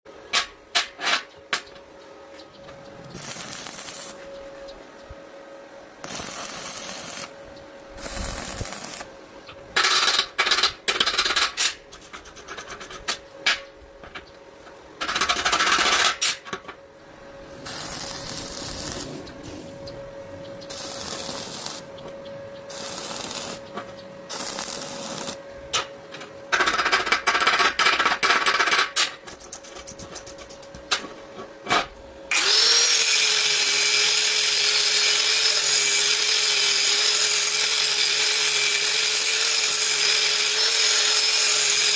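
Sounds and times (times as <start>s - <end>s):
faint steady hum: 0.1s - 32.3s
bursts of tool noise: 3.1s - 4.3s, 6.0s - 7.4s, 8.0s - 9.1s, 9.8s - 13.2s, 17.5s - 19.9s, 20.6s - 22.0s, 22.7s - 25.4s, 32.3s - 41.9s.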